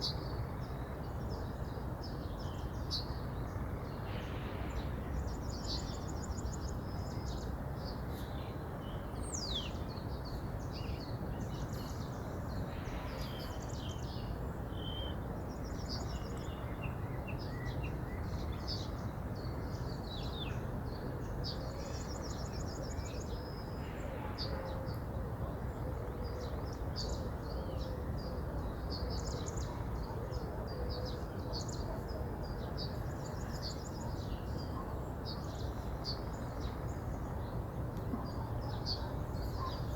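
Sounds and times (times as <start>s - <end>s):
birds singing and chirping: 38.2s - 39.9s.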